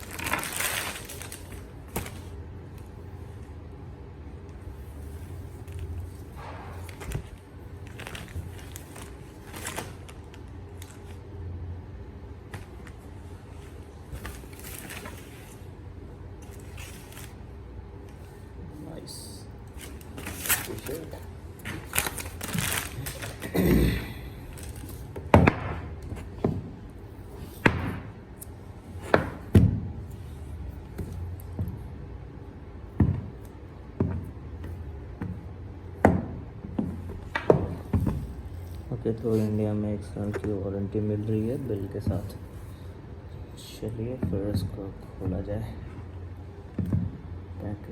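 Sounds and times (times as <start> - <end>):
packaging rustle: 0.0 - 2.4, 6.9 - 11.2, 19.8 - 23.5, 24.5 - 25.1
steady low hum: 0.0 - 47.9.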